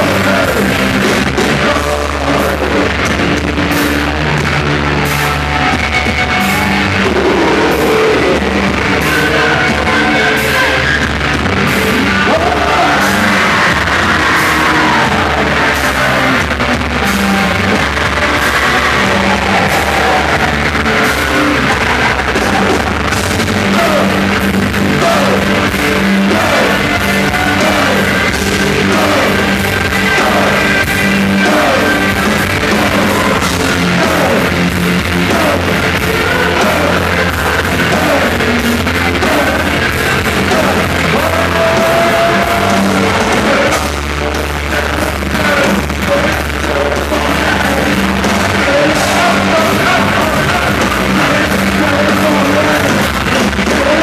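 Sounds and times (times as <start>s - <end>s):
distorted guitars: 0.0s - 54.0s
pounding drum beat: 0.0s - 54.0s
shouted vocals: 0.0s - 54.0s.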